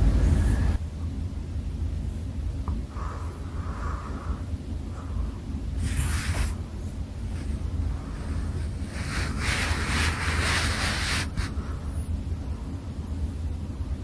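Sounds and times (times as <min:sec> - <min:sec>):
steady low hum: 0:00.0 - 0:14.0
rabbit snoring: 0:03.0 - 0:12.1.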